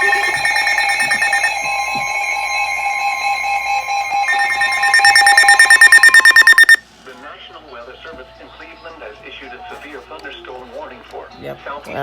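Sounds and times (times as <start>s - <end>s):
electronic alert tones: 0.0s - 6.8s.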